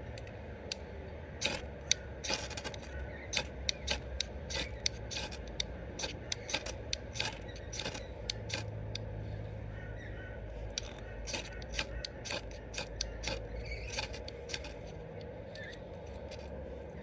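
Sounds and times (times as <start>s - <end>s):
ferro rod scraping: 10.8s - 15.0s.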